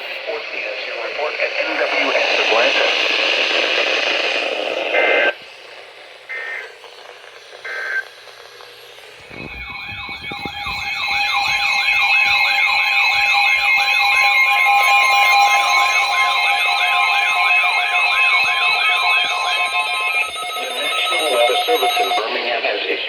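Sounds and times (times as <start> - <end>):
radio hiss: 0.0 - 12.4, 15.8 - 23.0
wavering siren-like alarm: 6.2 - 23.0
two-tone data squeal: 6.3 - 6.8, 7.6 - 8.1, 9.1 - 23.0
steady two-note tone: 9.3 - 22.4.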